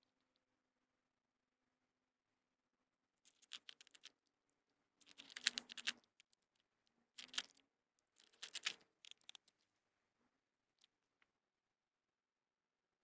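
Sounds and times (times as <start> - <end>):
cat crunching dry kibble: 3.3 - 4.2, 5.0 - 6.2, 7.2 - 7.6, 8.2 - 9.5.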